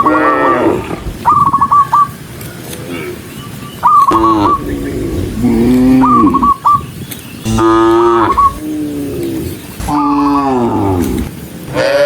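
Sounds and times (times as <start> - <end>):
cattle mooing: 4.1 - 6.5, 7.5 - 12.0
high warbling whistle-like call: 7.5 - 8.7.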